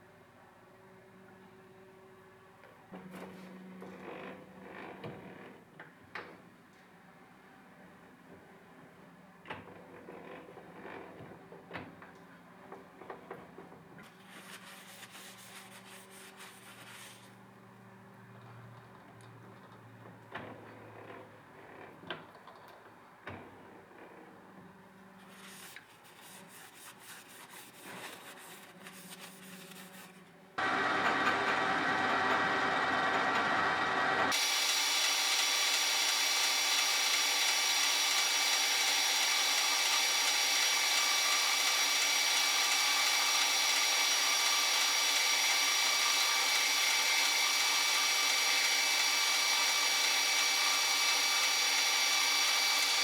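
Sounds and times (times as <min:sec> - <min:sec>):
metal lathe whining: 0:30.6 - 0:53.0
hiss of cutting metal: 0:34.3 - 0:53.0.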